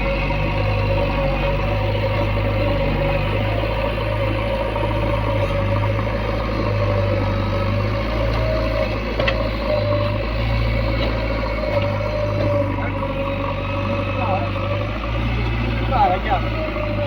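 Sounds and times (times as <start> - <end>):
diesel engine running: 0.0 - 17.0.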